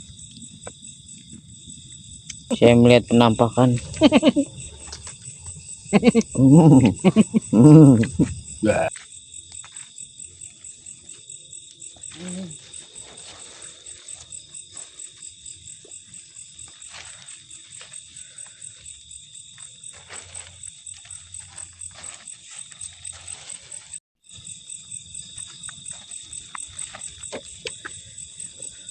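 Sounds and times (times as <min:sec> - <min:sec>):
insects chirping: 0:00.0 - 0:28.9
loud voice: 0:06.0 - 0:08.9.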